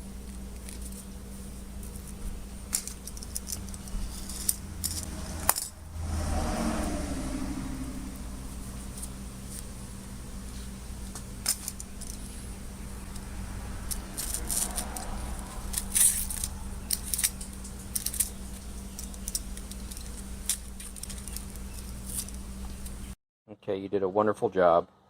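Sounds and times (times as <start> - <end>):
machine hum: 0.0 - 23.2
metallic clicks and scrapes: 1.8 - 5.9, 11.2 - 23.0.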